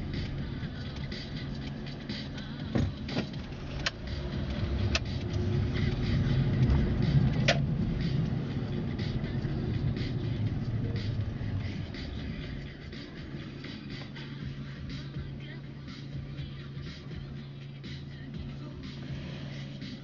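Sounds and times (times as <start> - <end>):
car engine rumble: 0.0 - 20.0
road noise: 0.0 - 20.0
sharp clicks: 3.2 - 6.0.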